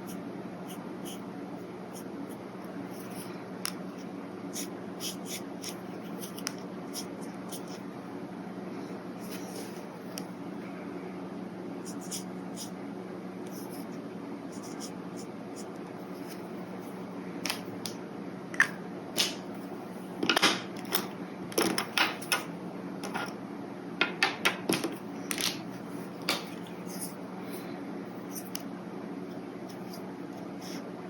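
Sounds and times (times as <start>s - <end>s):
brush pen scratching on paper: 0.0s - 1.2s, 1.9s - 3.3s, 4.5s - 7.8s, 11.8s - 12.7s, 14.5s - 16.5s
steady low hum: 0.0s - 31.0s.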